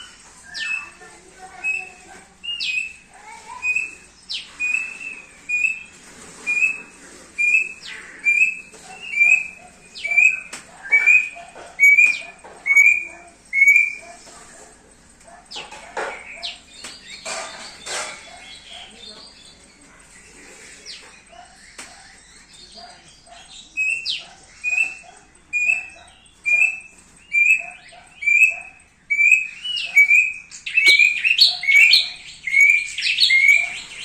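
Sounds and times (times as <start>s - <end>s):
bird calls: 0.0s - 34.0s
bird singing whistled notes: 3.6s - 5.9s, 6.5s - 14.0s, 23.8s - 34.0s.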